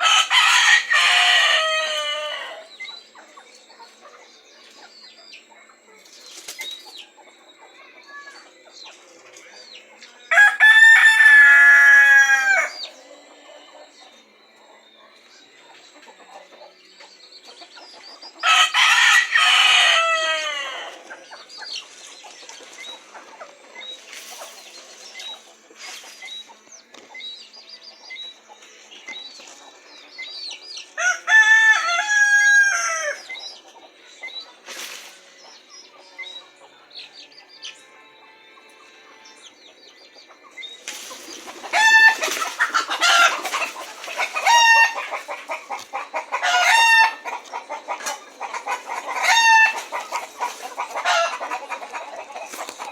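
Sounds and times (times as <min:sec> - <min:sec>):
roosters crowing: 0:00.0 - 0:02.9, 0:10.3 - 0:14.0, 0:18.3 - 0:25.3, 0:31.0 - 0:33.5, 0:40.8 - 0:52.9
faint chicken chirps and clucks: 0:00.0 - 0:37.8, 0:38.6 - 0:52.9.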